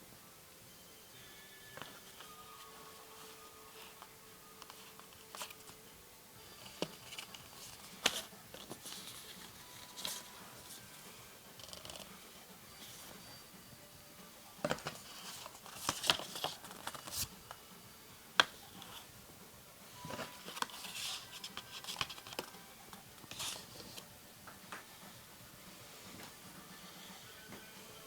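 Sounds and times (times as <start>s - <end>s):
packaging rustling: 1.8s - 13.4s, 14.6s - 17.6s, 20.0s - 24.1s.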